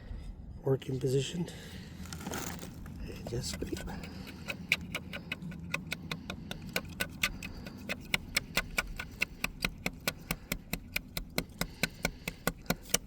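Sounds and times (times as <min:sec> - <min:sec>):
razor blade scraping glass: 0:03.2 - 0:13.0.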